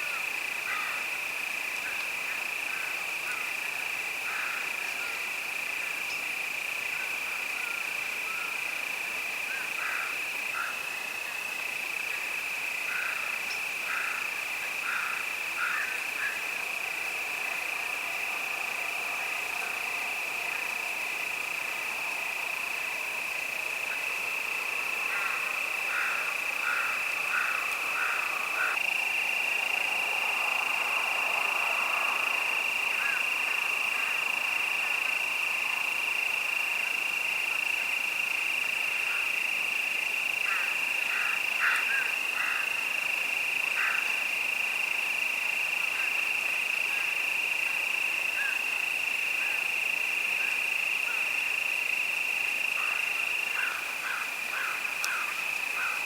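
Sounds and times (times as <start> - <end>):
crickets chirping: 0.0 - 56.0.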